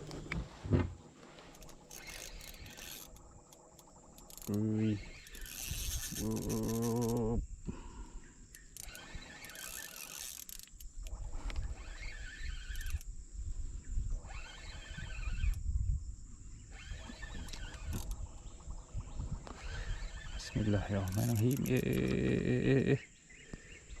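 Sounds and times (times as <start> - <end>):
wild animal calls: 4.2 - 7.4.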